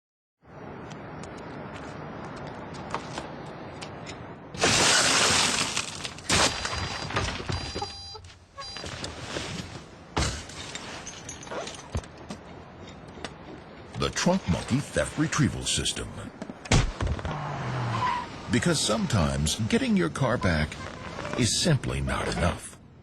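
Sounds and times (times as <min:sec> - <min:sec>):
glass shattering: 0:04.6 - 0:07.8, 0:10.2 - 0:12.0.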